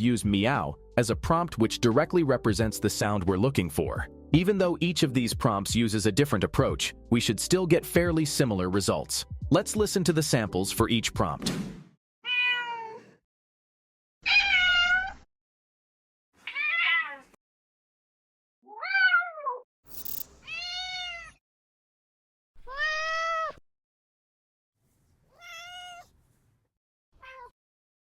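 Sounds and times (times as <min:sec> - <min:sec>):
cat meows: 0:12.2 - 0:13.2, 0:14.2 - 0:15.2, 0:16.4 - 0:17.4, 0:18.7 - 0:19.6, 0:20.4 - 0:21.4, 0:22.6 - 0:23.6, 0:25.3 - 0:26.2, 0:27.2 - 0:27.6.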